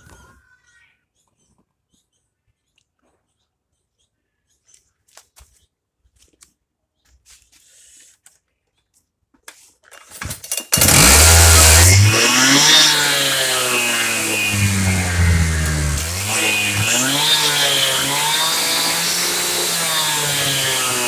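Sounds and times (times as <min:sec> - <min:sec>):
starter cord pulls: 0:10.2 - 0:21.0
power cutter engine running: 0:10.7 - 0:21.0.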